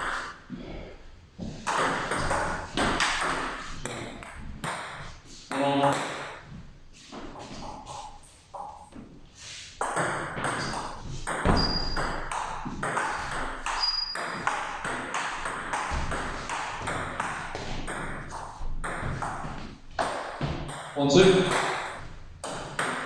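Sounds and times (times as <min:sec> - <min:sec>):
ball bouncing on table: 0:01.6 - 0:06.4, 0:09.8 - 0:23.0
ping pong ball clicking off rackets: 0:01.7 - 0:06.4, 0:09.8 - 0:23.0
high squeaks: 0:11.4 - 0:12.2, 0:13.6 - 0:14.5.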